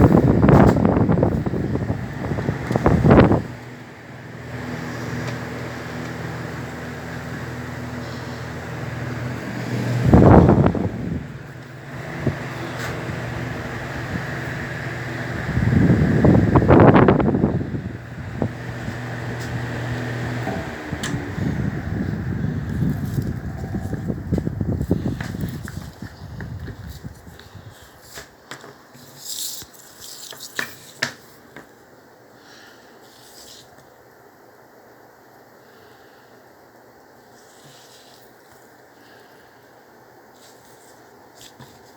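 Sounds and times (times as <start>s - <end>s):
wind buffeting microphone: 0.0s - 3.6s, 9.8s - 27.9s
desk fan humming: 0.0s - 41.9s.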